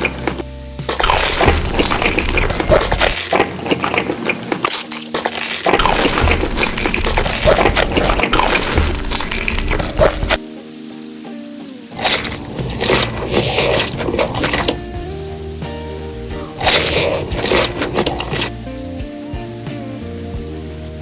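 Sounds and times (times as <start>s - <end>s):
crunching of hard brittle food: 0.0s - 10.4s, 12.0s - 14.8s, 16.4s - 18.5s.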